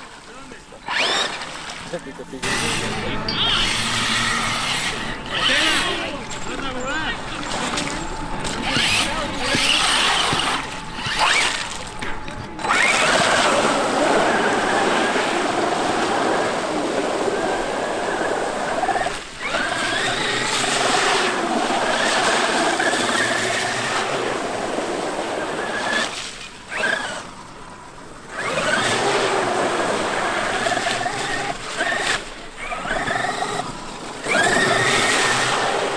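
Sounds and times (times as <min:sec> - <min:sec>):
electric motor whining: 0:00.0 - 0:35.9
tyre and ground noise: 0:00.8 - 0:15.7.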